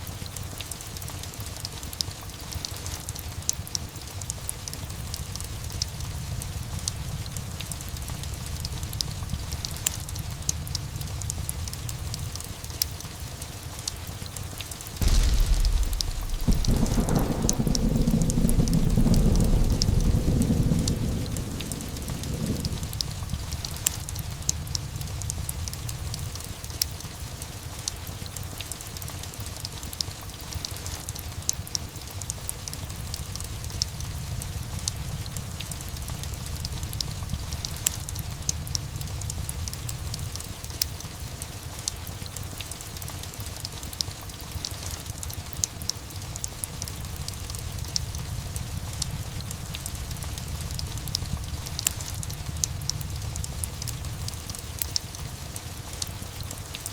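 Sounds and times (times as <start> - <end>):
steady rain: 0.0 - 56.9
low rumble: 15.0 - 25.0
fireplace crackling and popping: 15.0 - 27.2, 27.9 - 56.9.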